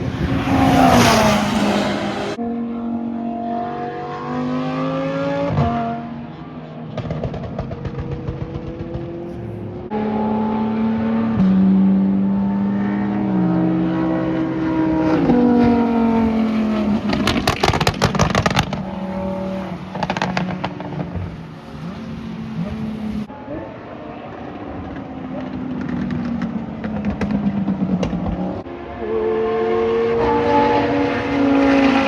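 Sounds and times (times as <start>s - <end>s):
race car engines: 0.0s - 32.0s
rapid sharp cracks: 17.1s - 18.8s.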